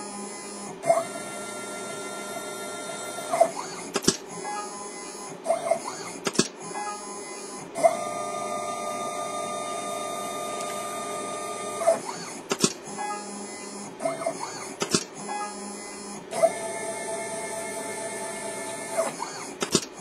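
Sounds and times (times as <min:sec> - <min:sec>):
sharp machine clicks: 0:03.3 - 0:06.9, 0:11.8 - 0:13.2, 0:14.0 - 0:15.4, 0:18.7 - 0:20.0.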